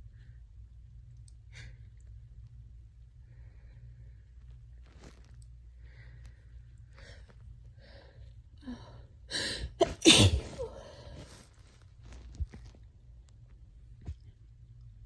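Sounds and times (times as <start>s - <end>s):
person sneezing: 9.8s - 10.8s.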